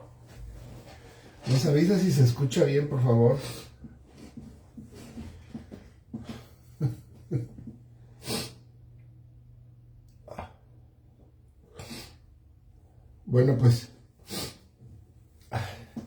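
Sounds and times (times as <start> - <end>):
low steady hum: 0.0 - 16.0
breathy puffs or rustles: 0.3 - 1.7.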